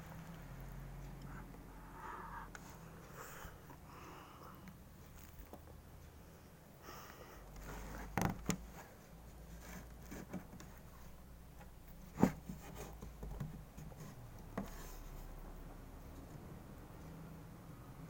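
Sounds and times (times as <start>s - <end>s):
faint rustling and scraping: 0.0s - 3.9s, 4.5s - 16.5s.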